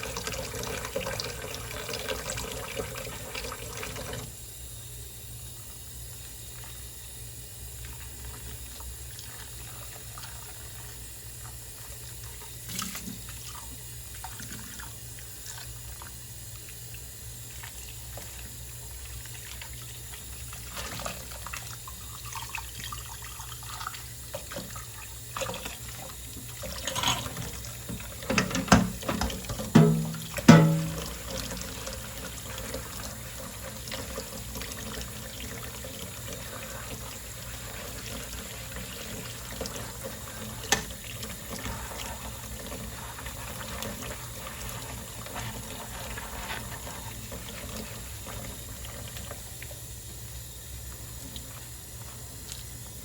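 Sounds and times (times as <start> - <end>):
tap running into sink: 26.4 - 31.6, 40.6 - 41.8
low steady hum: 28.0 - 38.5
dishes clinking: 28.4 - 31.1.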